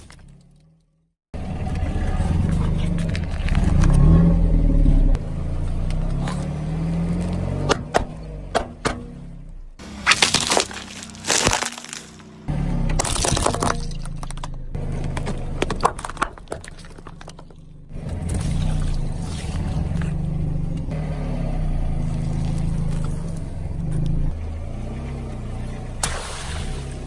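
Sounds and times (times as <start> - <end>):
car engine rumbling: 0.2 - 26.0
tyres crunching objects: 9.8 - 12.4, 13.0 - 14.6.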